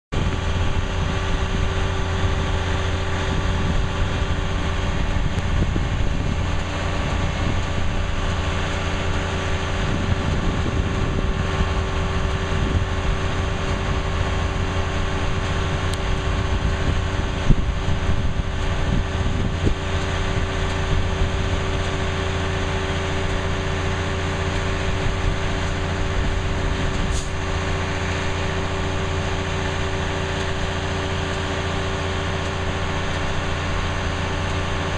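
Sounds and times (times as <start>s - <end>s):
crane engine droning: 0.1s - 34.9s.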